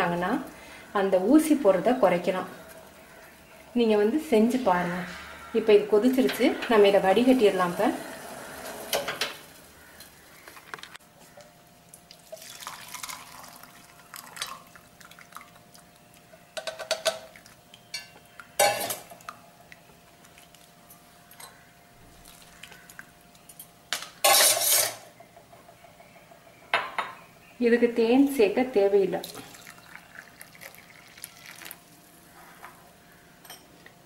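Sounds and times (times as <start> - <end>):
liquid pouring: 12.1 - 15.9, 22.1 - 23.0, 29.3 - 31.9
kitchen vessels clinking: 17.9 - 19.2, 23.6 - 25.4.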